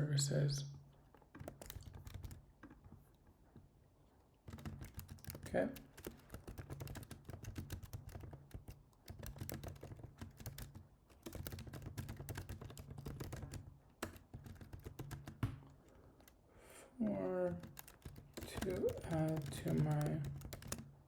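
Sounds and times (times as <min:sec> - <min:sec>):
typing on computer keyboard: 0:01.1 - 0:02.9, 0:04.4 - 0:16.4, 0:17.1 - 0:21.0
loud keyboard click: 0:01.3 - 0:02.8, 0:04.5 - 0:16.4, 0:17.6 - 0:20.9.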